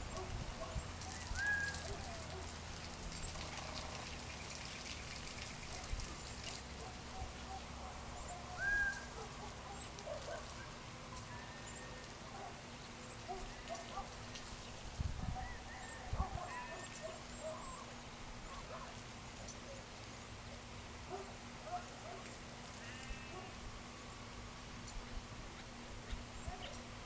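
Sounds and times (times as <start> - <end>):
bird whistles: 1.2 - 1.9, 8.6 - 9.1.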